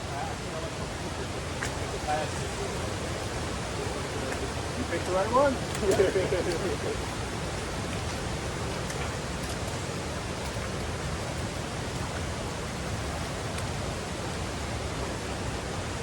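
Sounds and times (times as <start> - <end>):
water rushing hiss: 0.0 - 16.0.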